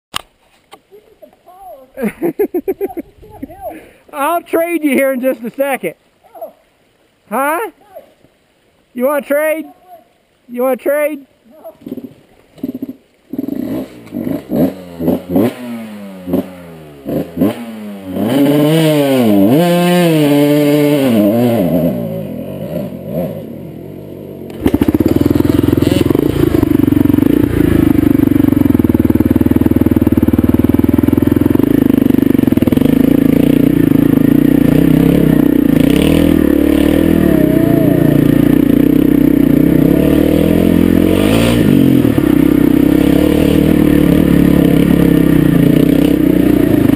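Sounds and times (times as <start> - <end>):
dirt bike engine revving: 11.8 - 46.9.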